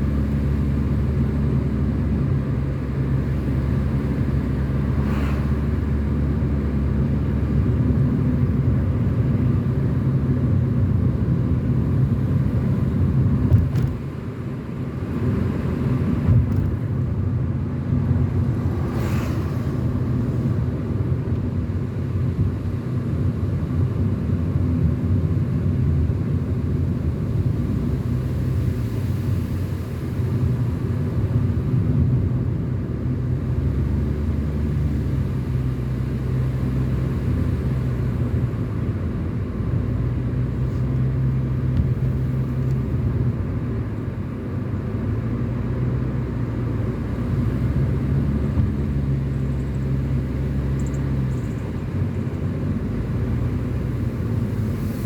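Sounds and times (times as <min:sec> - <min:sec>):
car engine and tyre rumble: 0:00.0 - 0:55.0.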